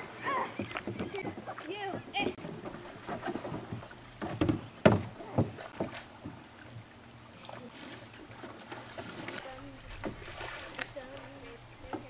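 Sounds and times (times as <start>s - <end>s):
kayak paddling: 0.0s - 12.0s
sharp paddle knocks: 4.2s - 6.0s.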